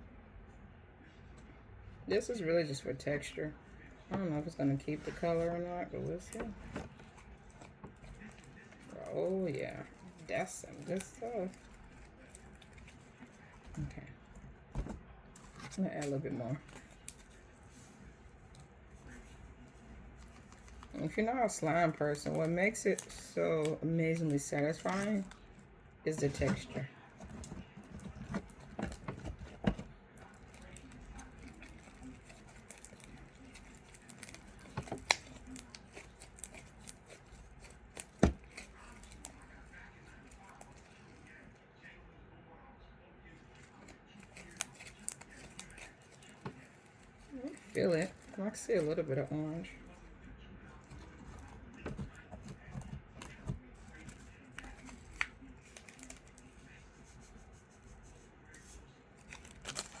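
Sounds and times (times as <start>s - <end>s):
slime clicks and crackles: 30.2s - 41.0s, 43.6s - 48.3s.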